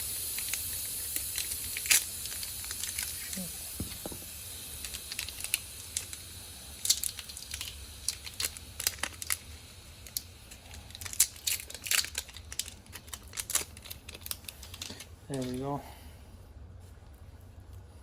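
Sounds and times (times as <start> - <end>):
plastic packaging crinkling and tearing: 6.8 - 9.4, 10.0 - 15.6.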